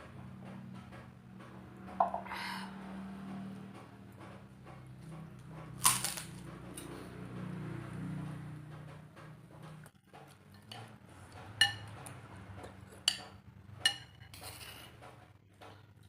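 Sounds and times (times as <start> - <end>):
cutlery clinking against a dish: 9.7 - 15.0
soft scraping of eating: 14.0 - 15.2.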